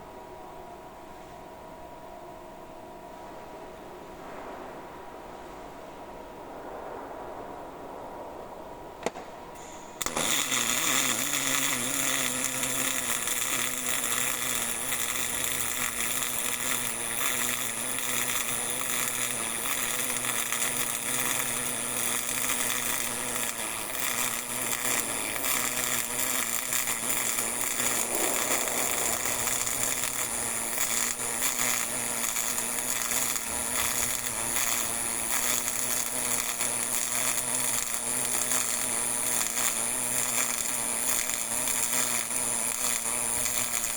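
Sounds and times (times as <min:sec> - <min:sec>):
welding arc buzzing crackle: 0:09.0 - 0:43.9.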